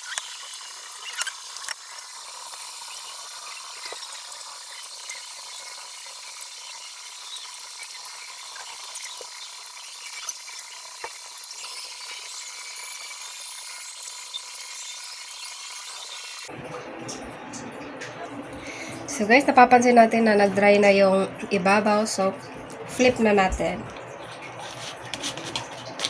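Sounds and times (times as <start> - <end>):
batter sizzling in frying pan: 0.0 - 16.5.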